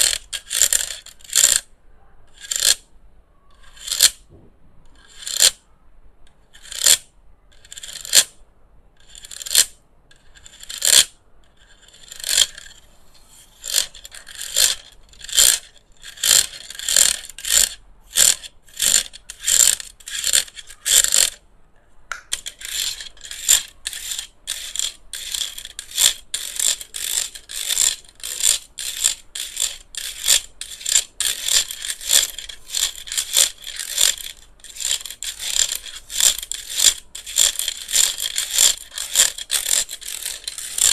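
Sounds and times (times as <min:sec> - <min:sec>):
scratchy strokes on plastic fan casing: 0:22.3 - 0:40.9.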